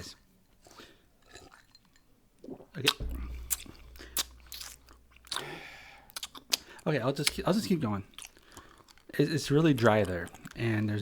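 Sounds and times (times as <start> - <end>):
loud crunchy chewing: 6.1 - 11.0.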